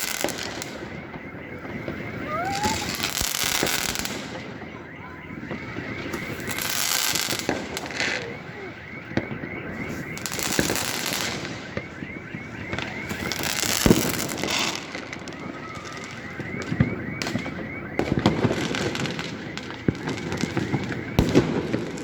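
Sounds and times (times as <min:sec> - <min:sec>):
firecracker bangs: 0:00.0 - 0:22.0
fireworks crackling: 0:00.0 - 0:22.0.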